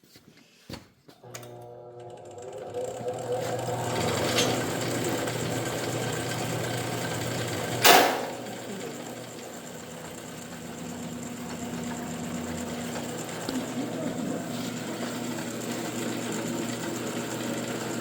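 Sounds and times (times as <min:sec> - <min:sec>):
cutting machine humming: 0:01.2 - 0:18.0
loud sharp bang: 0:07.8 - 0:08.5.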